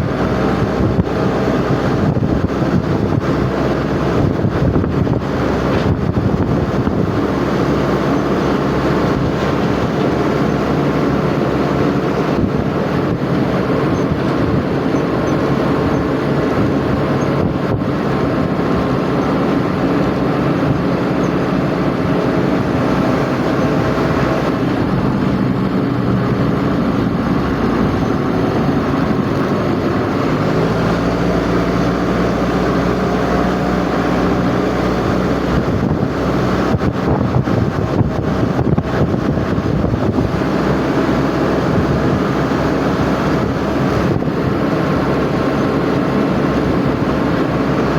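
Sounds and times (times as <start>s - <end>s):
road and wind noise: 0.0s - 47.9s
vehicle engine drone: 0.0s - 47.9s.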